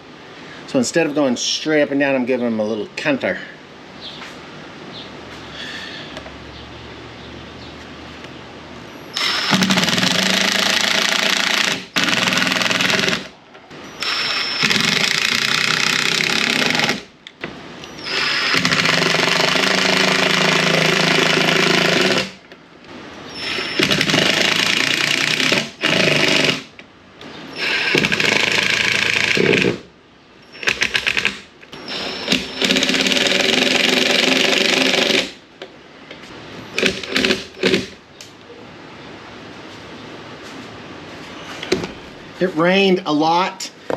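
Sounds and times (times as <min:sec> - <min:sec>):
power screwdriver driving screws: 0:09.2 - 0:13.3, 0:17.8 - 0:22.4, 0:30.6 - 0:35.4.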